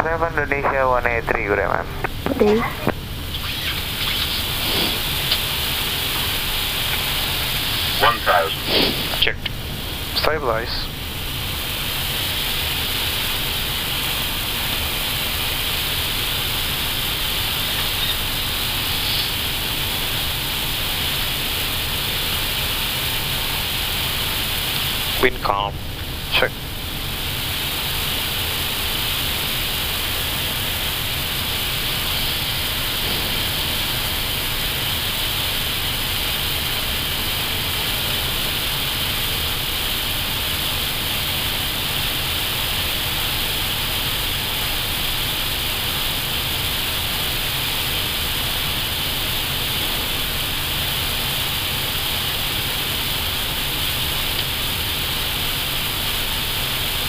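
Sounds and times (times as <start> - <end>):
air rushing over cockpit: 0.2 - 14.9, 24.7 - 38.7.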